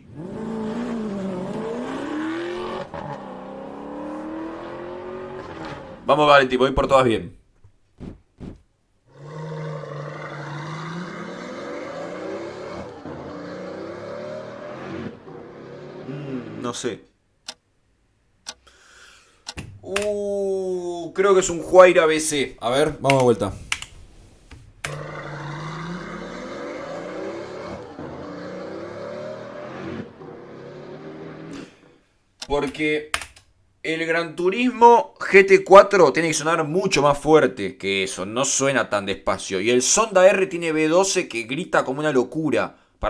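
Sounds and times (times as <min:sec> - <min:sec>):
car engine accelerating: 0:00.0 - 0:06.2, 0:09.8 - 0:16.8, 0:24.7 - 0:31.9.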